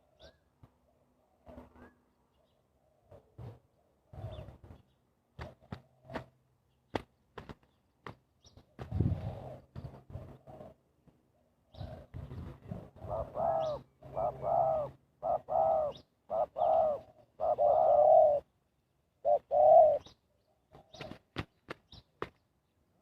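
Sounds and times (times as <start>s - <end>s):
dove cooing: 0.0s - 4.6s, 5.4s - 6.3s, 8.7s - 18.5s, 19.2s - 21.4s.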